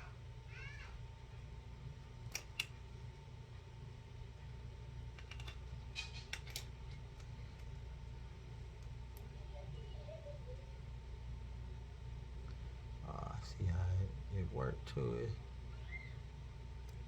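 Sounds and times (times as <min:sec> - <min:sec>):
sharp small clicks: 0:02.3 - 0:02.8, 0:05.1 - 0:07.7.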